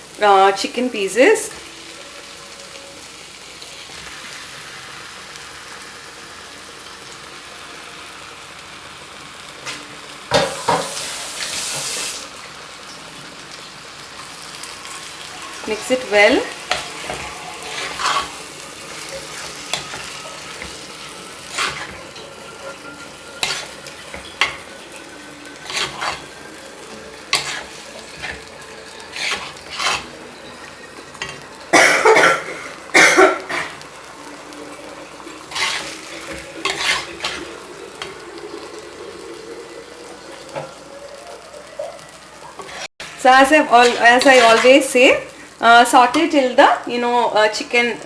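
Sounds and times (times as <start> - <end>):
food sizzling in a frying pan: 0.0 - 48.0
spatula scraping a pan: 14.4 - 31.7, 34.8 - 46.6.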